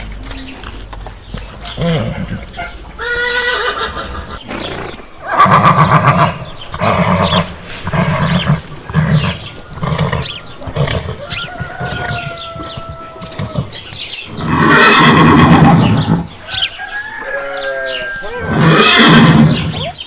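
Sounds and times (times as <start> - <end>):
horse neighing: 1.8 - 20.0.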